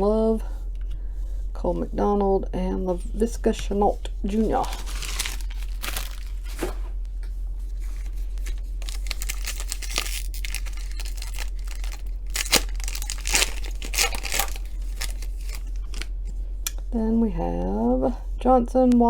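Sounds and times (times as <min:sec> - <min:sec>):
low hum: 0:00.0 - 0:19.0
wrapper tearing and crinkling: 0:04.4 - 0:06.8, 0:07.8 - 0:16.1
cards rustling: 0:04.4 - 0:07.0, 0:07.7 - 0:16.2.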